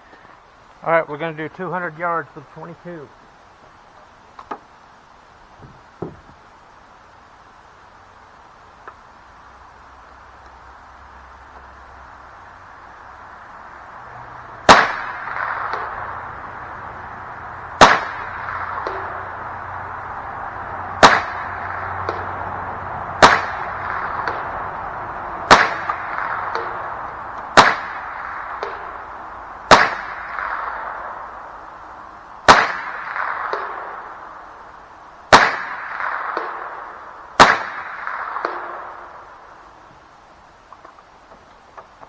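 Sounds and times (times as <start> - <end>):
rifle shots: 14.6 - 16.3, 17.8 - 19.4, 21.0 - 22.3, 23.2 - 24.6, 25.4 - 26.9, 27.5 - 29.1, 29.7 - 31.3, 32.4 - 34.2, 35.3 - 39.4.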